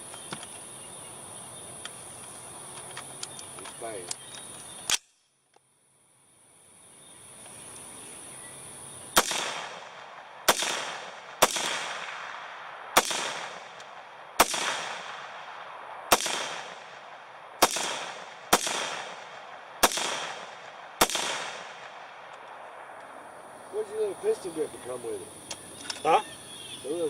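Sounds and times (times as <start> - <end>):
rifle shots with echo: 9.2 - 22.9.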